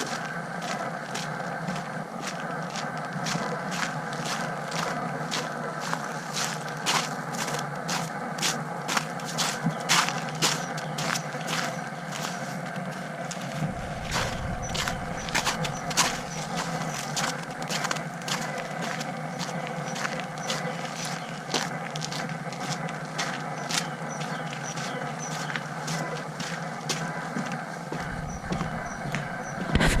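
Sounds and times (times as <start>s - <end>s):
steady camera whine: 0.1s - 30.0s.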